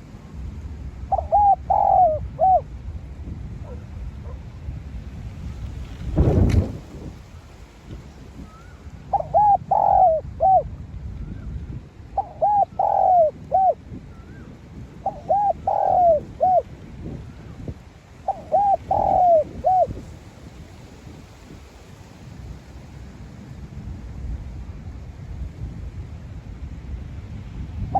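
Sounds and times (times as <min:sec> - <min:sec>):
dove cooing: 0:01.1 - 0:02.7, 0:09.1 - 0:10.6, 0:12.2 - 0:14.4, 0:15.0 - 0:16.7, 0:18.2 - 0:20.0.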